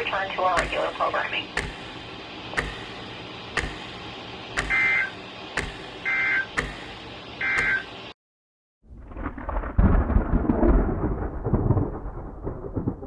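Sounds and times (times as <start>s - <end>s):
sharp clicks: 0.5s - 0.9s, 1.5s - 6.9s.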